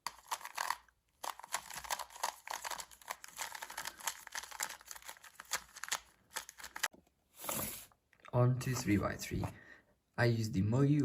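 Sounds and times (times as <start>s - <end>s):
plastic puzzle cube clicking: 0.0s - 6.9s.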